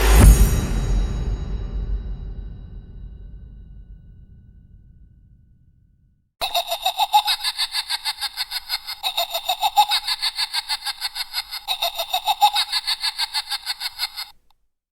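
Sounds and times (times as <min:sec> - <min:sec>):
cackling laugh: 0:06.4 - 0:14.4.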